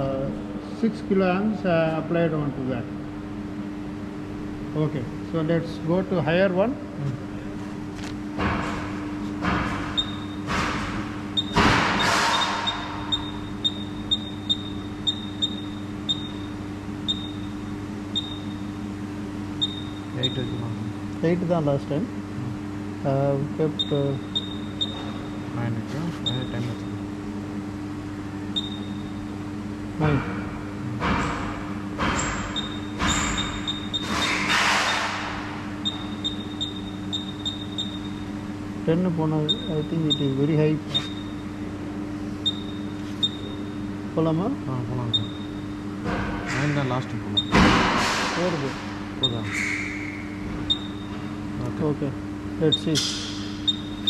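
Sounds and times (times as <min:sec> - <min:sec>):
steady machine hum: 0:00.0 - 0:54.0
short high beeps: 0:12.7 - 0:17.6, 0:35.8 - 0:38.2, 0:42.5 - 0:43.8.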